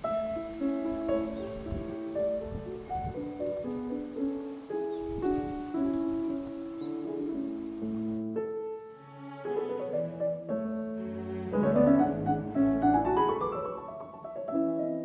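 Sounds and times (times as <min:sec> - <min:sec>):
slow piano: 0:00.0 - 0:15.0
bowed strings: 0:08.9 - 0:14.3.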